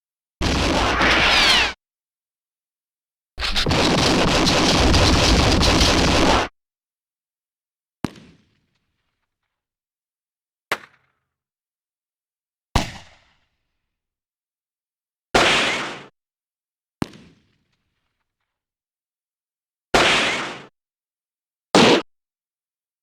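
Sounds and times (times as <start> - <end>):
dense gunfire burst: 0.4 - 1.8, 3.4 - 6.5.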